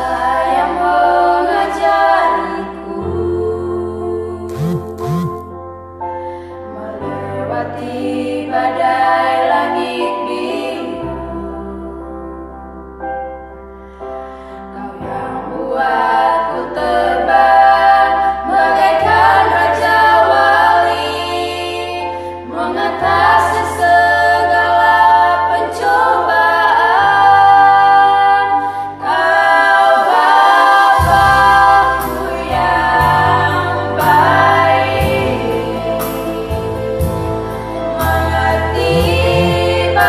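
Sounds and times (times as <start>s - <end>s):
children singing in harmony: 0.0s - 4.7s, 6.7s - 12.1s, 14.8s - 40.0s
steady low notes: 31.0s - 40.0s.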